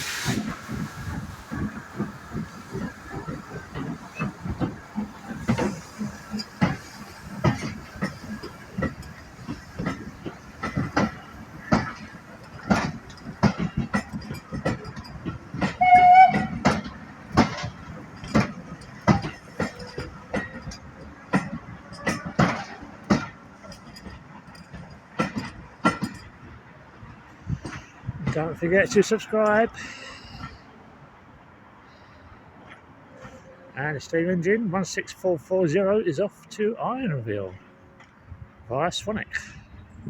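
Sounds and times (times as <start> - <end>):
steam train chuffing: 0.0 - 26.4
steam train whistle: 15.8 - 16.6.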